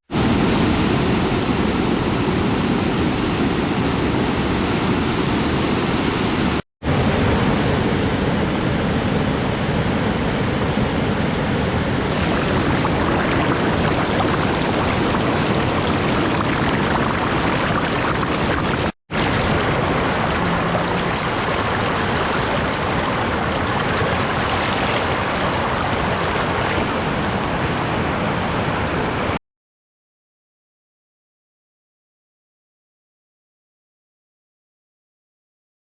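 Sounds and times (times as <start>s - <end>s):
waterfall and river rushing: 0.1s - 29.4s.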